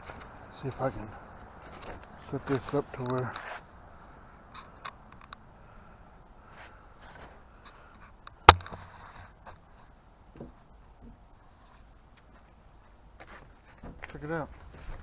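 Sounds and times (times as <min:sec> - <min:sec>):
high-pitched insect chorus: 0:00.0 - 0:15.0
sharp loud knock: 0:08.5 - 0:08.8.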